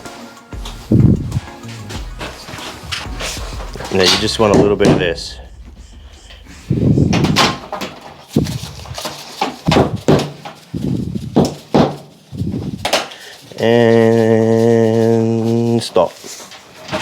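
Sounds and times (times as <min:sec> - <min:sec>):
steady pitched hum: 0:00.0 - 0:10.1.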